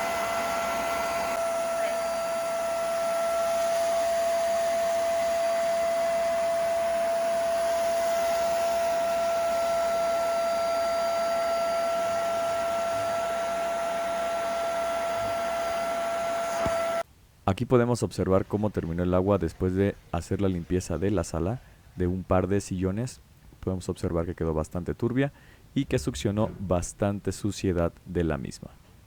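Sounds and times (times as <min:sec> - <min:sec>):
spot cleaner motor whining: 0:00.0 - 0:17.0
suction hissing: 0:00.0 - 0:17.0.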